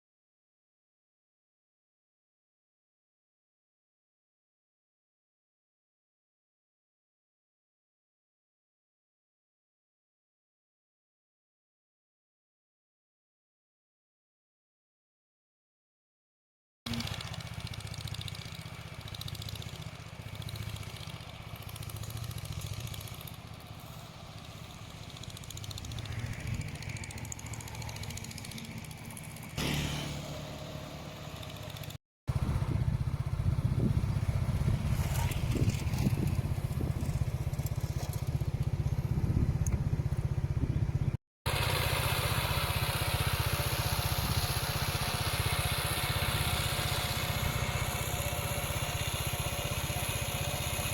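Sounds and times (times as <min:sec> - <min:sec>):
engines rumbling: 0:16.9 - 0:50.9.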